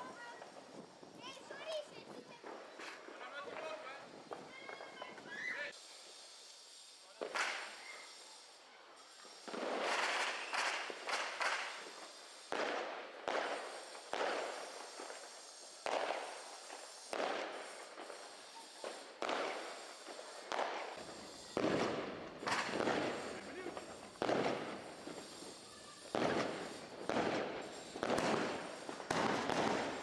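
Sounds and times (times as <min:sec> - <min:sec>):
firework cakes banging: 0:09.0 - 0:30.0.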